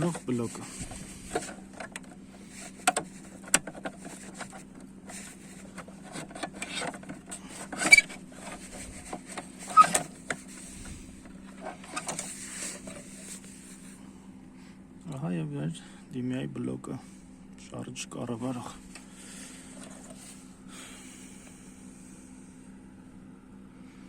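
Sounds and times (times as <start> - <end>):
low hum: 0.0 - 24.0
plastic clicks and knocks: 2.8 - 4.8.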